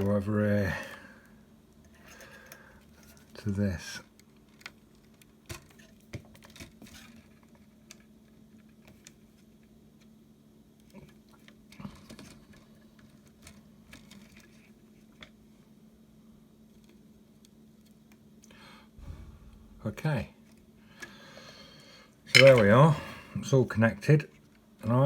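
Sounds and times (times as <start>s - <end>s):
steady low hum: 7.9s - 25.0s.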